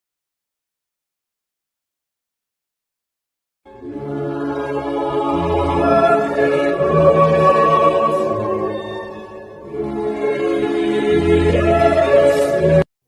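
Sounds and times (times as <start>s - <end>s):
choir singing chords: 3.7s - 12.9s.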